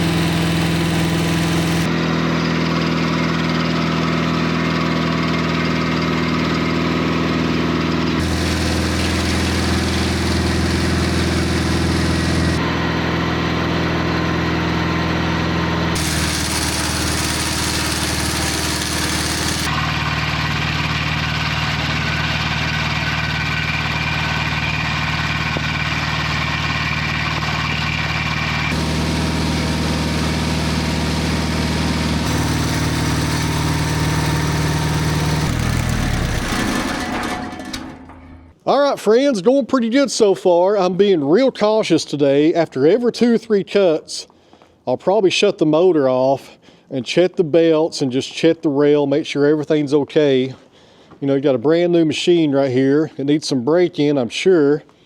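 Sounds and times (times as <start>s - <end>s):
saw cutting a log: 0.0s - 1.9s, 8.2s - 12.7s, 16.0s - 20.0s, 28.7s - 38.0s
sawmill engine running: 0.0s - 2.0s, 7.9s - 38.6s.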